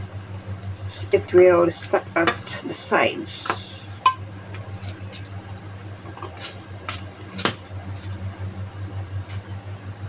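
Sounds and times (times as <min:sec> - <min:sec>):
low electrical hum: 0:00.0 - 0:10.0
kitchen utensils clicking: 0:00.6 - 0:04.2.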